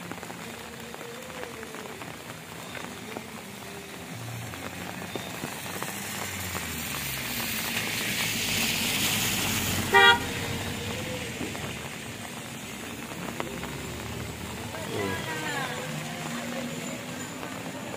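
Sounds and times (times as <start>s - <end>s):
motor vehicle passing: 4.2s - 17.9s
car horn toot: 9.9s - 10.4s.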